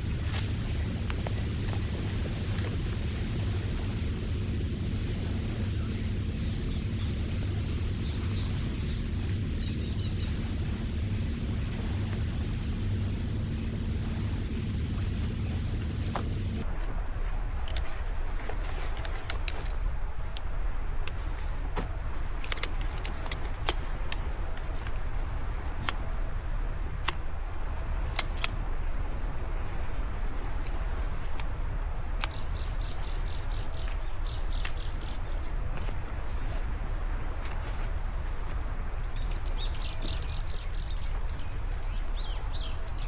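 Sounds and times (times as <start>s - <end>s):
bird chirping: 0.0s - 16.6s
wind rumble on microphone: 0.0s - 43.0s.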